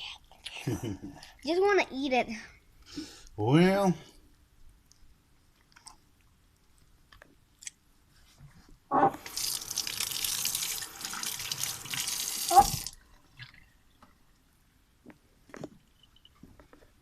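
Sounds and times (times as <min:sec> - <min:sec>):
tap water running into sink: 0:09.2 - 0:13.0.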